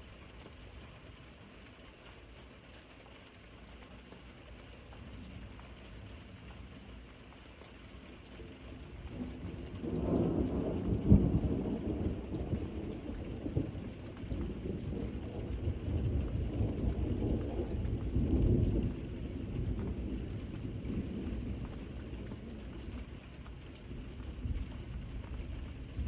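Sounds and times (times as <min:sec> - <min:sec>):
steady rain: 0:00.0 - 0:26.0
thunder rumbling: 0:08.5 - 0:26.0
thunder crack: 0:09.2 - 0:22.2.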